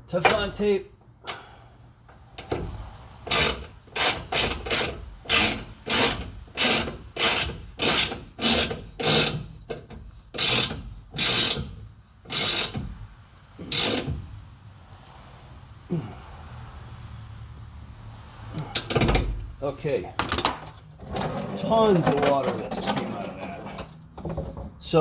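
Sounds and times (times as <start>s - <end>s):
hand ratchet rasping: 3.2s - 13.0s, 13.6s - 14.4s.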